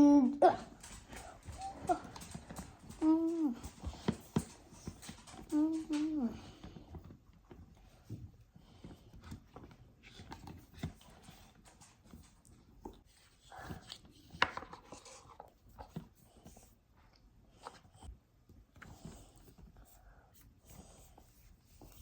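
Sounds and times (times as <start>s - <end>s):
small objects tapping and rustling: 0.5s - 16.1s.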